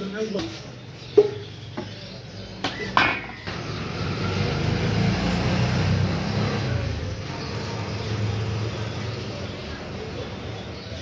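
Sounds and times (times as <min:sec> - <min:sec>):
vehicle engine passing by: 0:03.4 - 0:11.0.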